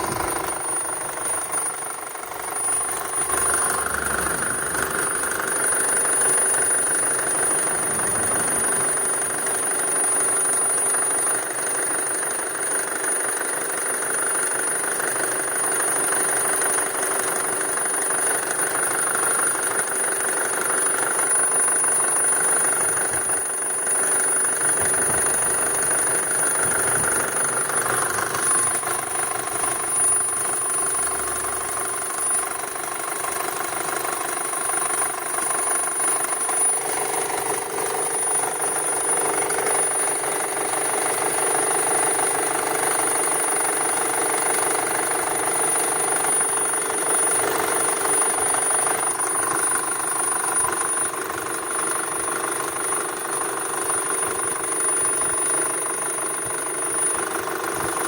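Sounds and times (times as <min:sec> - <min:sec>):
car engine idling: 0:00.0 - 0:12.4, 0:22.5 - 0:35.4.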